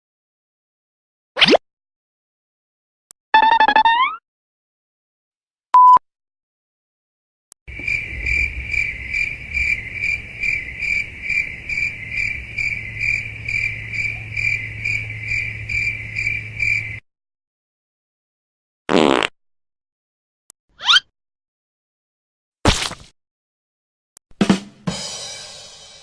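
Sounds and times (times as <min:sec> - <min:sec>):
short beep: 0:05.8 - 0:06.0
crickets chirping: 0:07.7 - 0:17.0.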